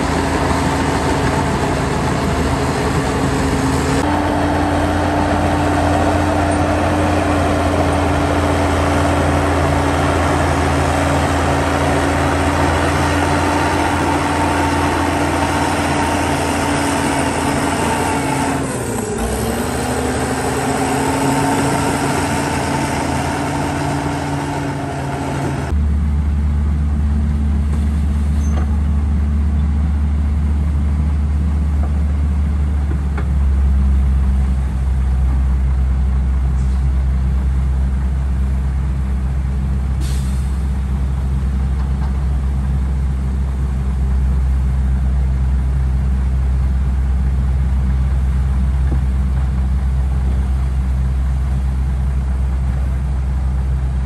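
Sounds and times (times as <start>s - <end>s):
heavy diesel machinery running: 0.0s - 54.0s
deep steady drone: 20.0s - 54.0s.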